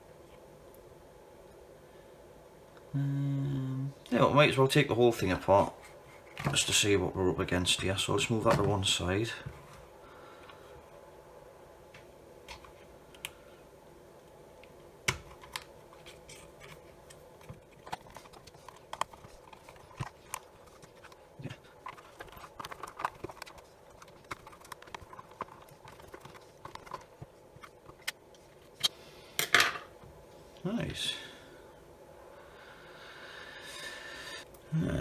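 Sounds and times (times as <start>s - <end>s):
plastic parts clicking and knocking: 15.1s - 28.2s.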